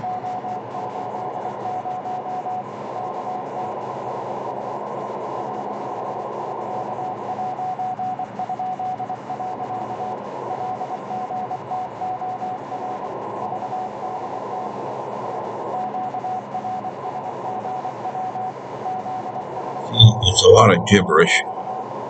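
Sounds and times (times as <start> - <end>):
morse code tone: 19.9 - 21.4
radio band hiss: 19.9 - 21.4.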